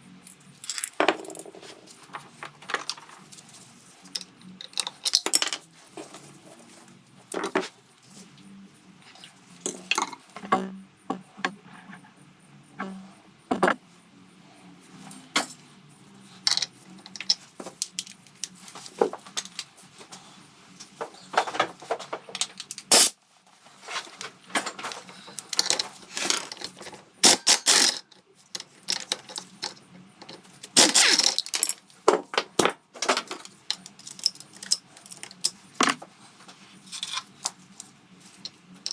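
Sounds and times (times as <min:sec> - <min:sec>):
metal tools clinking and clattering: 0:00.3 - 0:07.7, 0:16.4 - 0:19.7, 0:23.8 - 0:36.0, 0:36.9 - 0:37.5, 0:38.4 - 0:38.9.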